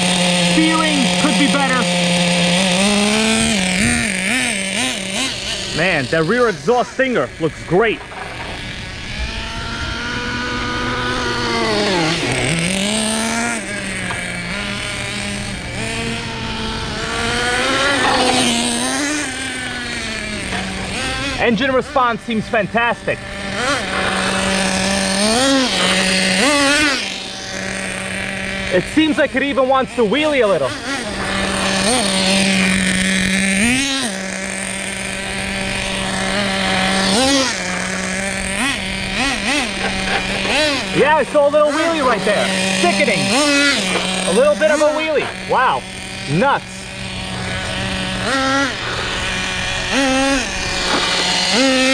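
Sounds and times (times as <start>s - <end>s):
rc truck nitro engine running: 0.0s - 51.9s.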